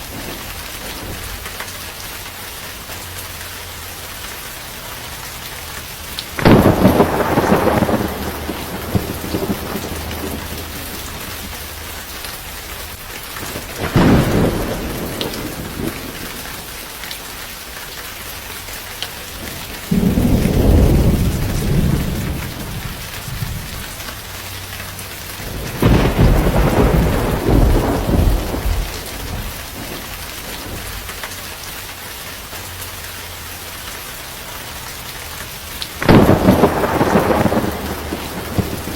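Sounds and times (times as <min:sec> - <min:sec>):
thunder rumbling: 0:00.0 - 0:02.0, 0:06.2 - 0:16.9, 0:19.4 - 0:24.4, 0:25.3 - 0:31.5, 0:35.9 - 0:38.9
steady rain falling: 0:00.0 - 0:38.9.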